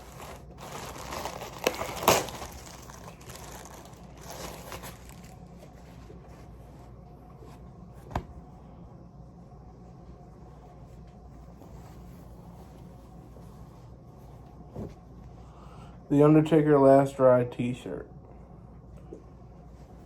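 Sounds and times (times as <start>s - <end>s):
packaging crinkling: 0.0s - 5.7s.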